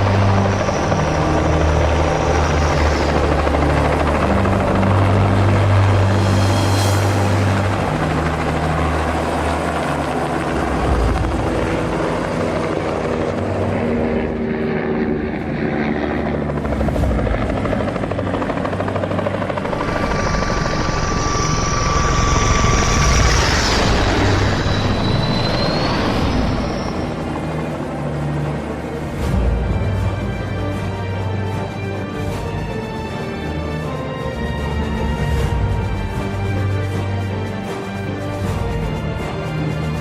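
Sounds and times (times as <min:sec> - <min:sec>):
high whine: 0:00.0 - 0:13.2, 0:18.7 - 0:30.8
helicopter rotor and engine: 0:00.0 - 0:40.0.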